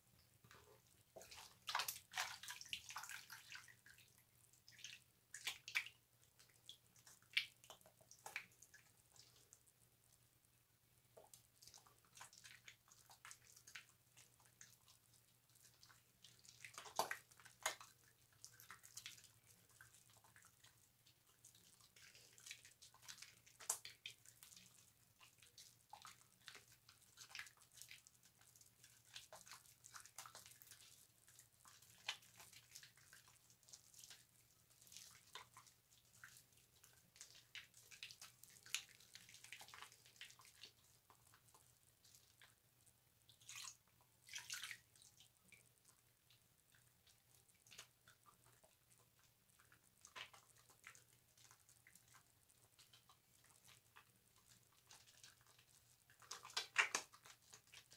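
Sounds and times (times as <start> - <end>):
wet soap squishing in loofah: 0.0 - 9.8, 11.1 - 57.9.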